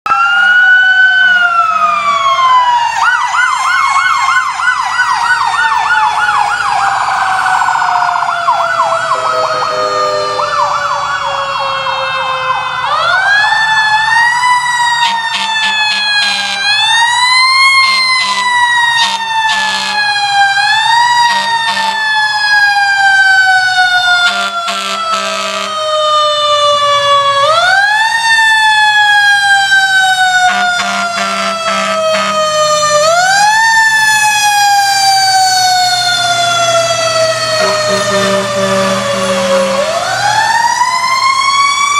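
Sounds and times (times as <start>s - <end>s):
fire engine siren wailing: 0.0s - 41.9s
short low horn blasts: 9.1s - 10.5s, 24.3s - 25.7s, 30.5s - 32.4s, 37.6s - 39.8s.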